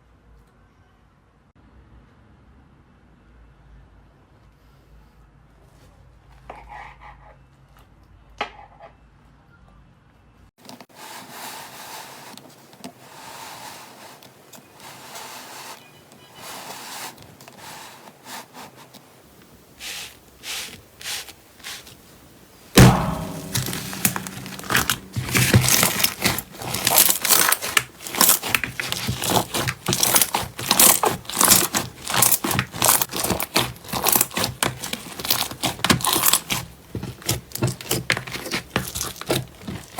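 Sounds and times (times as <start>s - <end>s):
slime crackling and squishing: 22.8s - 39.9s.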